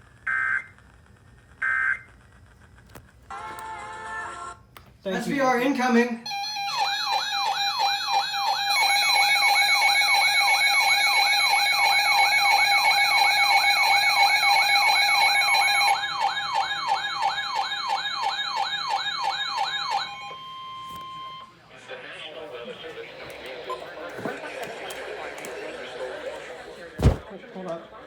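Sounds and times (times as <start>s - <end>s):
rising whoop siren: 6.3s - 20.7s.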